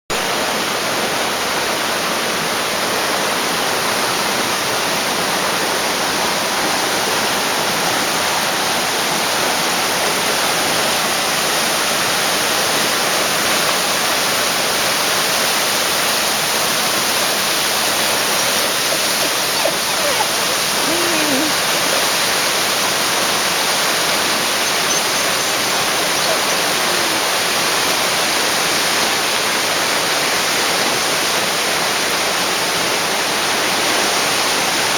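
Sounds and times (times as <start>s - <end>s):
waterfall rushing: 0.1s - 34.9s.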